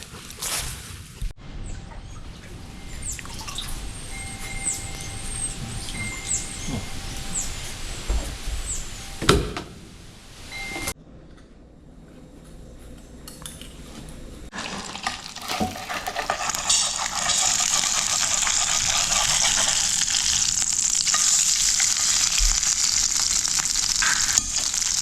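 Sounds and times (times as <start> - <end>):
food sizzling in hot oil: 14.5 - 25.0.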